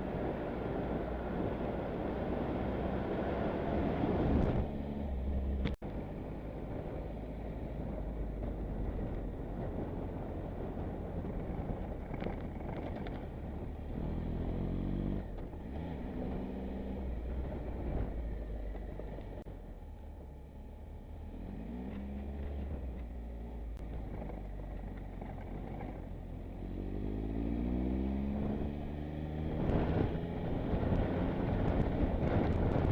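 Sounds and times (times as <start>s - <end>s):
wind and road noise: 0.0s - 32.9s.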